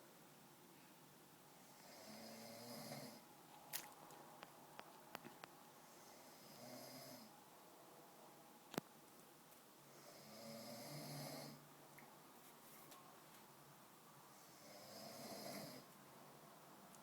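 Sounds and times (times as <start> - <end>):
man snoring: 1.8 - 3.2, 6.3 - 7.3, 10.0 - 11.6, 14.5 - 15.9.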